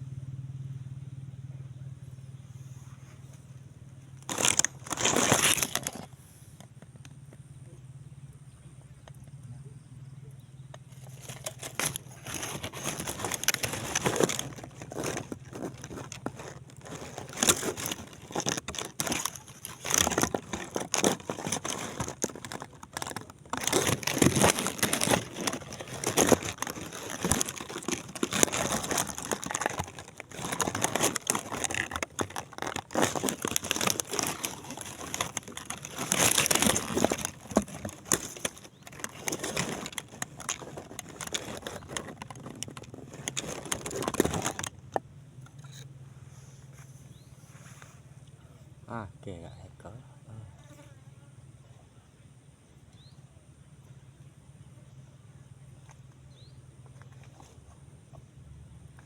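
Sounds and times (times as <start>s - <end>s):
plastic crinkling and rustling: 4.1s - 6.2s, 10.8s - 45.8s.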